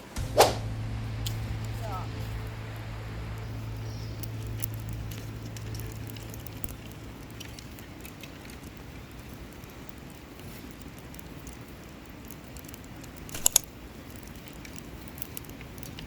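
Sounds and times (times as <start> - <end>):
steady low hum: 0.0 - 9.6
campfire crackling and popping: 0.0 - 16.0
soft rushing of fire: 0.0 - 16.0.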